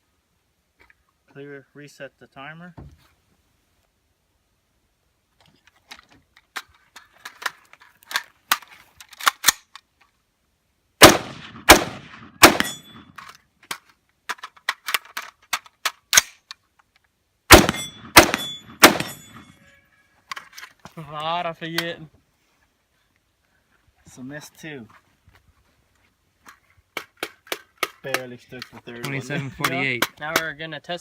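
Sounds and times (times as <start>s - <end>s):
rifle clicking and rattling: 5.7s - 10.1s, 11.0s - 19.5s, 20.2s - 20.8s, 26.4s - 30.5s
rifle shots: 11.0s - 13.1s, 17.5s - 19.5s.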